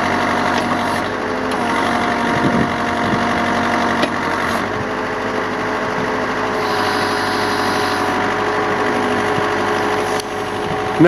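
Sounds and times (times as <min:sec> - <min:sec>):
backhoe engine running: 0:00.0 - 0:11.0.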